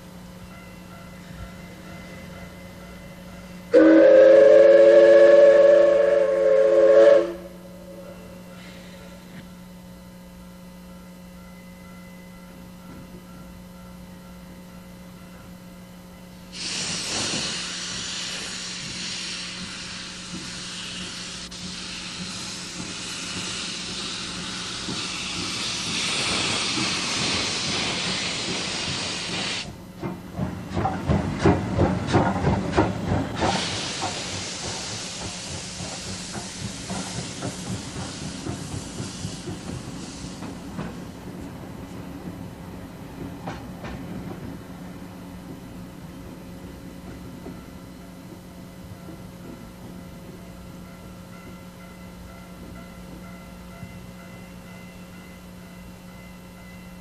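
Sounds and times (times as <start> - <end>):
locomotive exhaust chuffs: 16.4 - 57.0
loud steam hiss: 16.5 - 29.8, 32.7 - 41.0.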